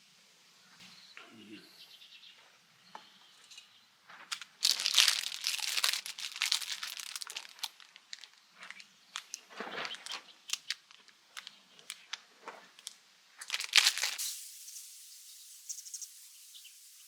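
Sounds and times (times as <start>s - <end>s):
crinkling and crumpling: 4.1s - 14.2s.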